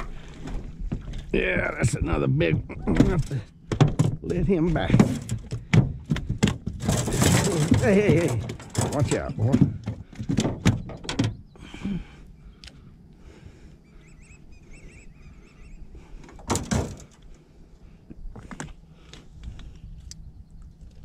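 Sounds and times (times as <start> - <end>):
low steady hum: 0.0 - 21.0
faint high chirping: 13.8 - 16.0.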